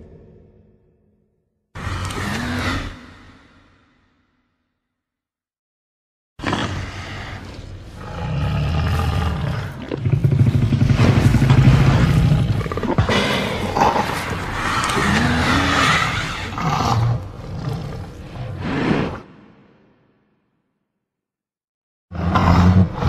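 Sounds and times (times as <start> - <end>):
monster roaring and growling: 1.8 - 3.5, 6.4 - 19.4, 22.1 - 23.0.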